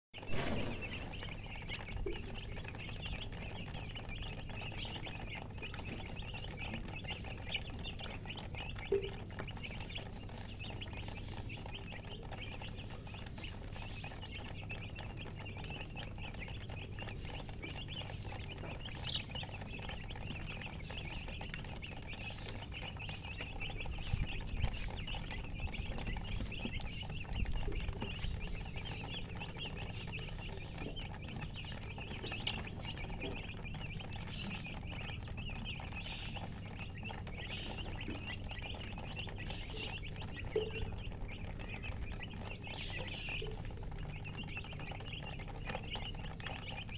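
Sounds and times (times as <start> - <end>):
chicks peeping: 0.1 - 46.9.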